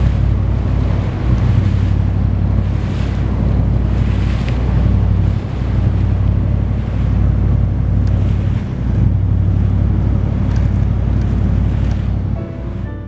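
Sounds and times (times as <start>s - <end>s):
wind buffeting microphone: 0.0s - 12.8s
motorboat engine drone: 0.0s - 13.0s
water rushing past hull: 0.0s - 13.0s.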